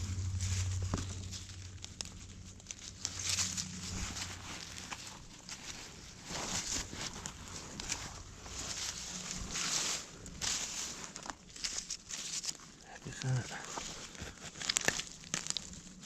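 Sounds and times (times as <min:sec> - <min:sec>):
rustling through leaf litter: 0:00.0 - 0:16.0.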